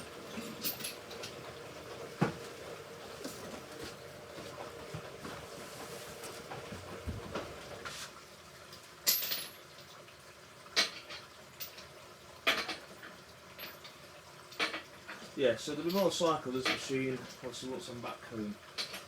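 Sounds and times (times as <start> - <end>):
washing machine drum tumbling: 0.0 - 7.9.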